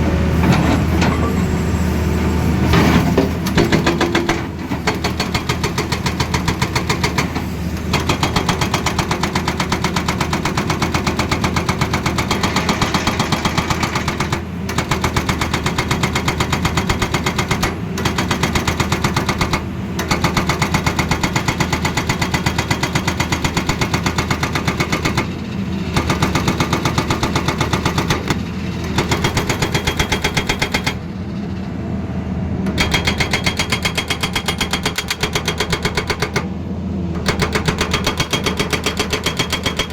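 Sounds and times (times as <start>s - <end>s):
diesel engine running: 0.0s - 39.9s
hydraulic breaker hammering: 3.1s - 31.1s, 32.7s - 36.6s, 37.2s - 39.9s.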